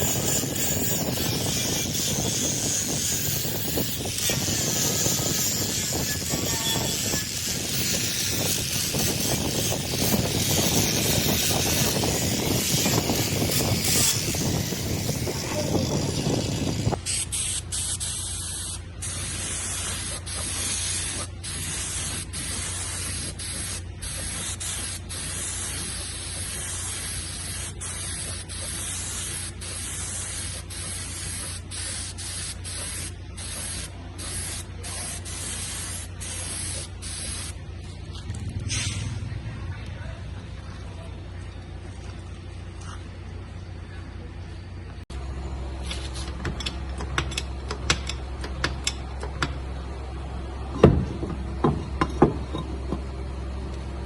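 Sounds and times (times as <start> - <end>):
spray hissing: 0.0 - 37.6.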